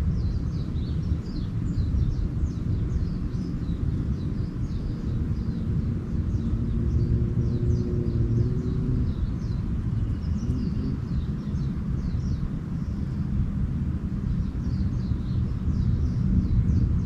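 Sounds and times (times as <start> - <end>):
small birds twittering: 0.0 - 17.0
steady low rumble: 0.0 - 17.0.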